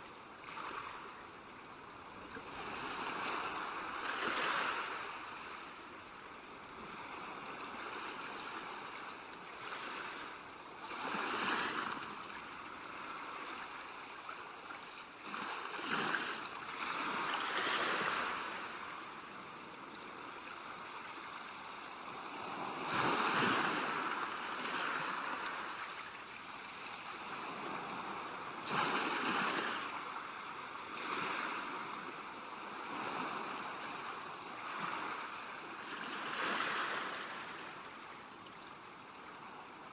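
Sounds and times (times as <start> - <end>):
ocean waves breaking: 22.2 - 26.2, 26.9 - 32.1.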